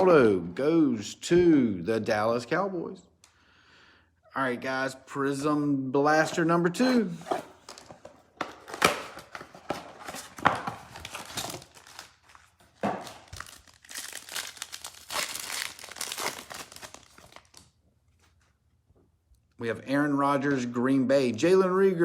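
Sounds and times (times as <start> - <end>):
cardboard tearing: 8.5 - 17.6
wrappers crinkling: 8.6 - 18.3.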